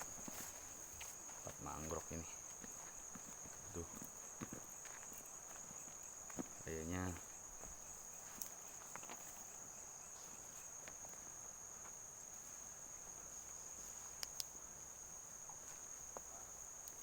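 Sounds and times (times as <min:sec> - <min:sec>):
crickets chirring: 0:00.0 - 0:17.0
faint sharp clicks: 0:14.2 - 0:14.6.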